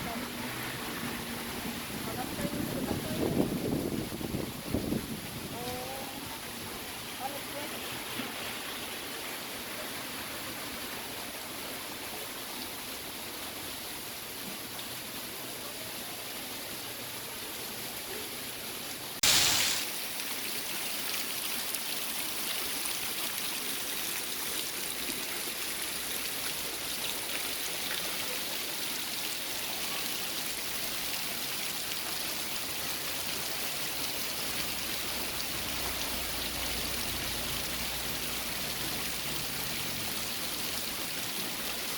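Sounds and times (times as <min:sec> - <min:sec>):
heavy rain pouring: 0:00.0 - 0:06.6, 0:19.1 - 0:20.2, 0:32.9 - 0:41.9
short loud burst of noise: 0:19.2 - 0:19.9.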